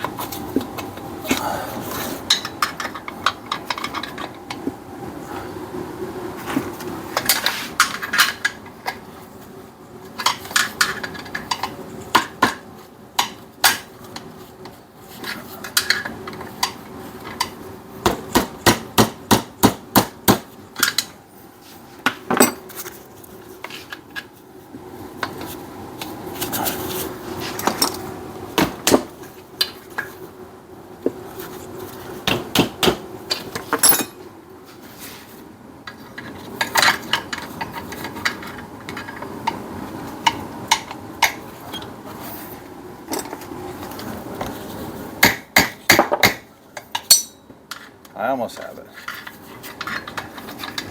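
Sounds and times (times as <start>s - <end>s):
faint steady hum: 0.0s - 50.9s
metal tools clinking on engine parts: 22.3s - 22.9s, 33.6s - 34.2s, 46.8s - 47.9s.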